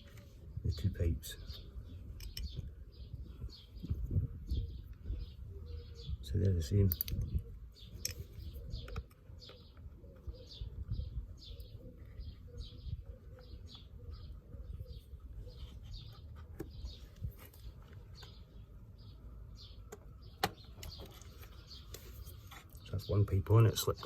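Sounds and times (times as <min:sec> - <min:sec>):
bird chirping: 0:00.0 - 0:24.0.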